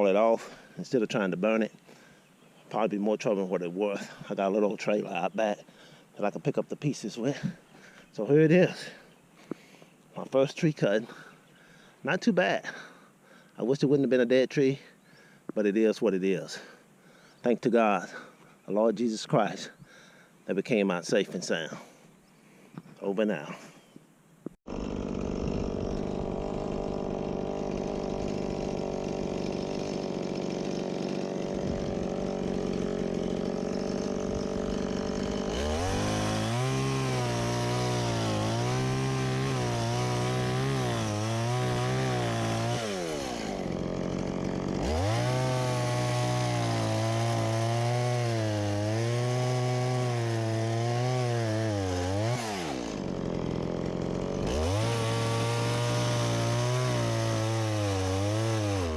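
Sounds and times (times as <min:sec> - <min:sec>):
chainsaw cutting: 0:00.0 - 0:11.4, 0:12.0 - 0:13.6, 0:24.7 - 0:58.9.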